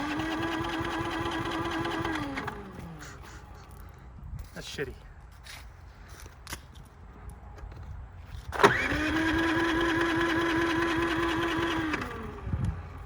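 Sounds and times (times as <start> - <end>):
electric starter motor cranking: 0.0 - 3.1, 8.5 - 13.0.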